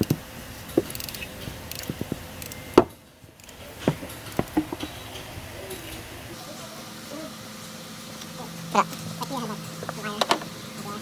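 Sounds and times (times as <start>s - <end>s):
hand tools clicking and knocking: 0.0s - 6.1s.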